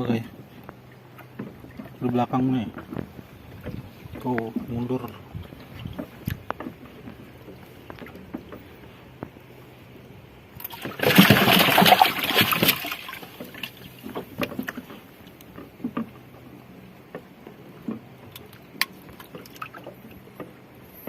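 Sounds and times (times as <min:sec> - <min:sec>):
light knocks and taps: 0:02.7 - 0:09.4
water splashing: 0:10.5 - 0:16.4, 0:17.9 - 0:20.4.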